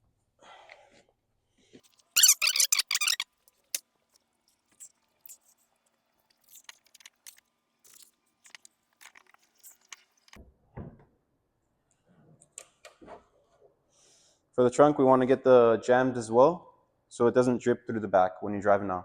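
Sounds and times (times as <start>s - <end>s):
towel rubbing and squeaking: 1.8s - 3.2s.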